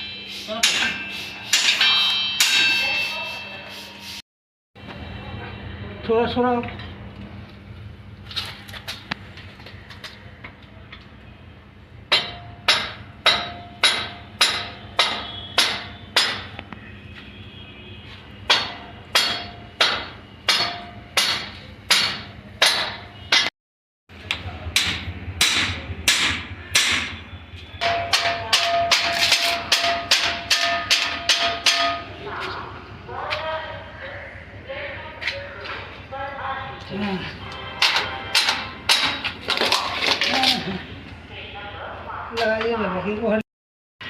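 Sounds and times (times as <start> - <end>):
hammer blows on metal: 0.0 - 4.2.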